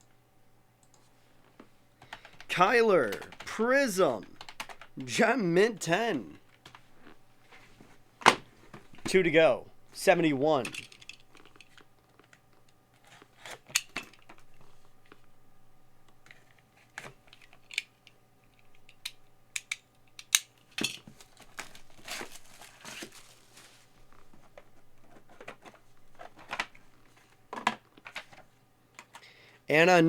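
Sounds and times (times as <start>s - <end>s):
wrapping tearing and crinkling: 21.2s - 24.3s
hard plastic cases clicking: 24.1s - 28.4s.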